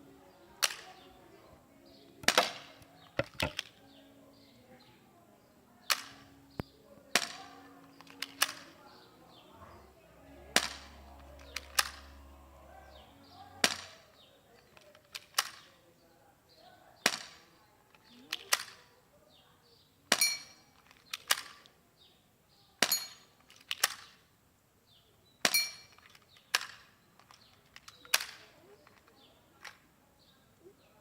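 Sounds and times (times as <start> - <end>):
pistol shots: 2.2 - 2.8.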